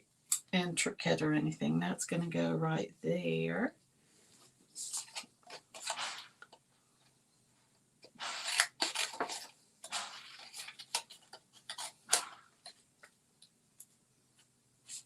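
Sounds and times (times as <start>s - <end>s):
paper rustling: 4.8s - 6.6s, 8.1s - 13.0s.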